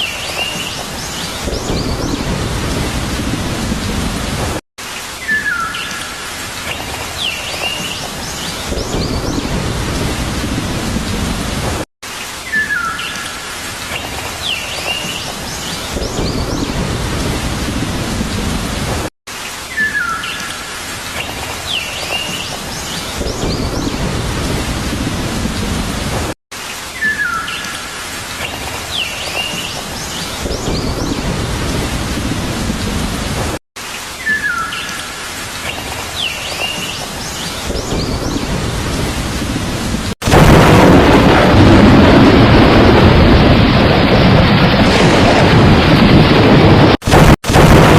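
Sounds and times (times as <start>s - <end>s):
distant thunder rumbling: 0.0s - 4.6s, 8.7s - 11.8s, 30.4s - 33.6s, 37.7s - 47.9s
steady heavy rain: 0.0s - 47.9s
birds chirping: 5.2s - 9.5s, 12.4s - 16.8s, 19.7s - 24.0s, 34.2s - 38.6s.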